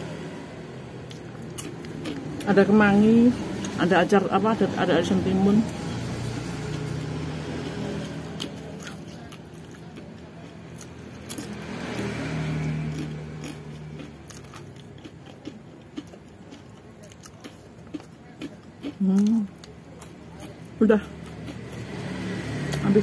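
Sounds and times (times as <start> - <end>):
person chewing food: 1.0 - 2.5, 6.2 - 22.8.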